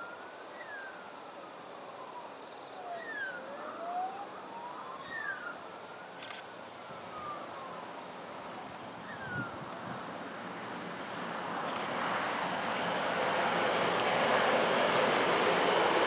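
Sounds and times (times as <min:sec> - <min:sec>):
steady rushing noise: 0:05.6 - 0:16.0
railcar drivetrain whining: 0:06.7 - 0:16.0.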